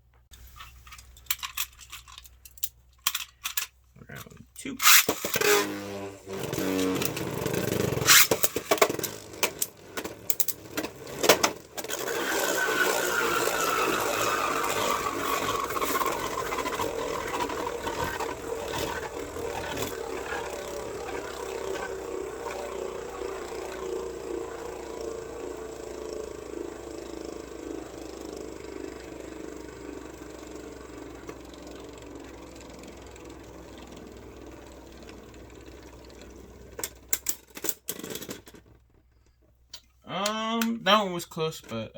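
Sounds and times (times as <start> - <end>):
spinning tops clacking together: 0.6 - 3.7, 4.8 - 5.6, 7.9 - 17.5
spinning tops whirring: 4.8 - 38.6.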